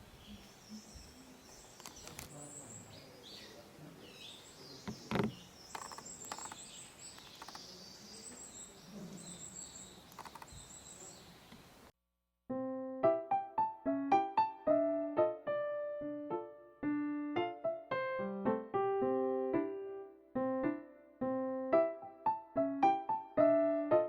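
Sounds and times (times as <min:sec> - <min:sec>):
small birds chirping: 0:00.0 - 0:11.9
soft knocks: 0:04.8 - 0:06.6.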